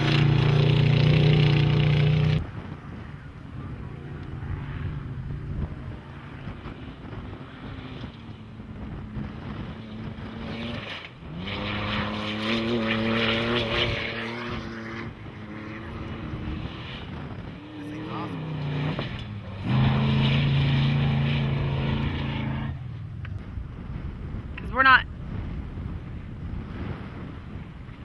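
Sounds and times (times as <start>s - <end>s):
race truck engine passing: 0.0s - 2.5s, 3.6s - 23.0s.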